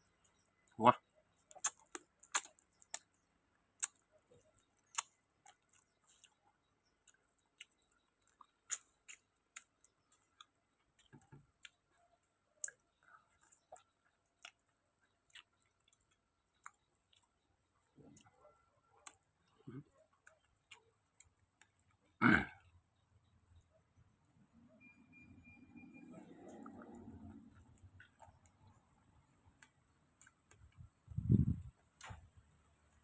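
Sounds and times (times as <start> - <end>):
mouth chewing clicks and smacks: 0.0 - 22.7, 26.1 - 32.2.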